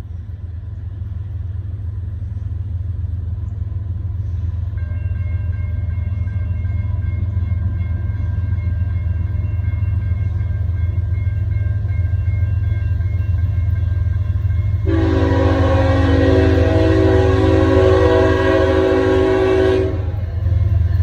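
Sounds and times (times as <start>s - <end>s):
freight train rumbling: 0.0s - 21.0s
locomotive air horn: 14.8s - 20.3s.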